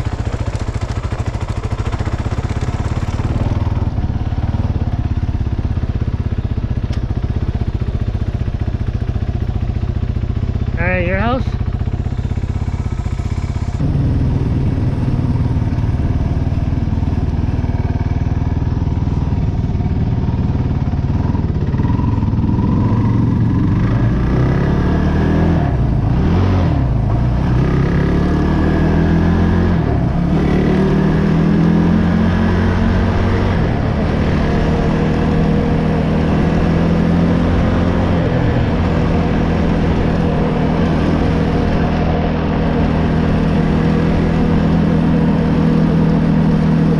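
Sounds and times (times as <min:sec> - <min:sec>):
atv engine revving: 0:00.0 - 0:46.9.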